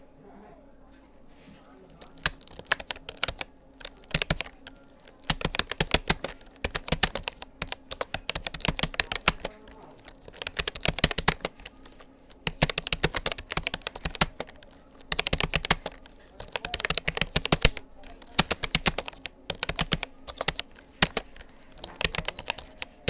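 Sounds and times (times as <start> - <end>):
fast typing on keyboard: 1.8 - 23.0.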